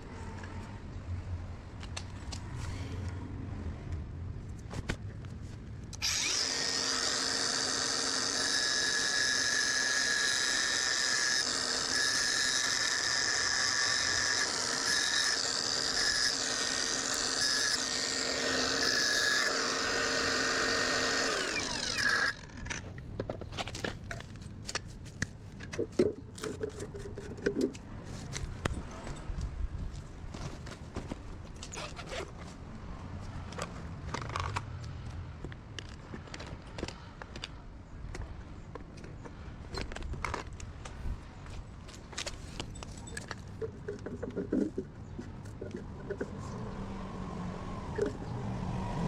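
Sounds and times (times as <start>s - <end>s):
electric motor running: 6.0s - 22.4s
motor winding down: 6.0s - 22.5s.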